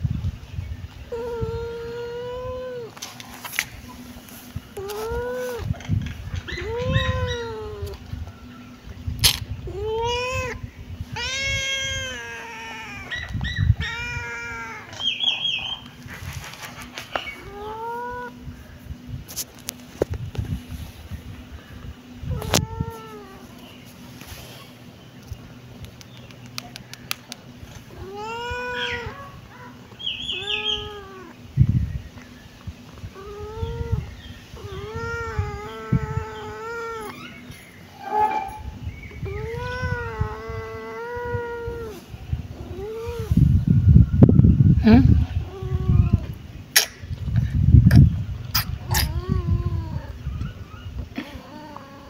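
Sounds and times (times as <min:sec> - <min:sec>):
kitten meowing: 0:01.1 - 0:02.9, 0:06.5 - 0:08.0, 0:09.7 - 0:15.0, 0:17.4 - 0:18.4, 0:22.3 - 0:23.6, 0:28.0 - 0:31.4, 0:33.2 - 0:37.4, 0:39.2 - 0:42.0, 0:48.6 - 0:50.5.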